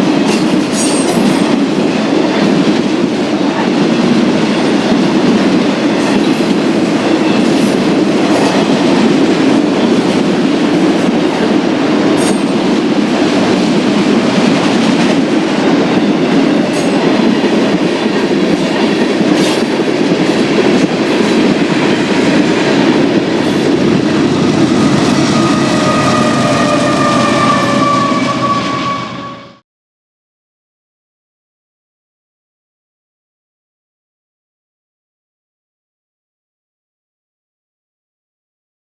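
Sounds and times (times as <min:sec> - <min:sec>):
train wheels rumbling on rail: 0:00.0 - 0:29.6
high ringing wheel squeal: 0:24.7 - 0:29.6.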